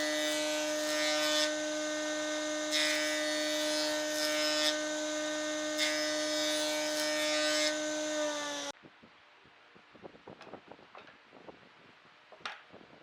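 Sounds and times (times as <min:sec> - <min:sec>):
power tool motor whining: 0:00.0 - 0:08.7.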